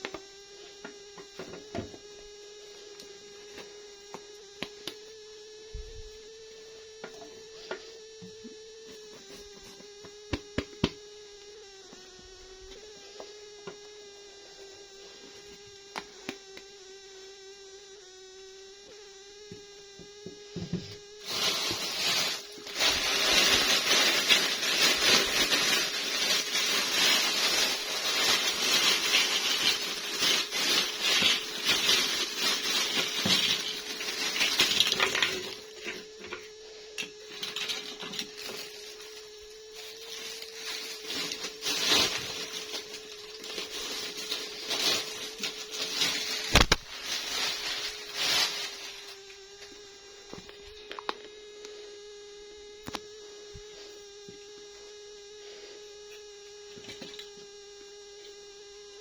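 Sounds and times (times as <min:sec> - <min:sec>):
faint steady hum: 0:00.0 - 0:59.0
plastic packaging crackling: 0:21.2 - 0:36.1, 0:37.3 - 0:49.2.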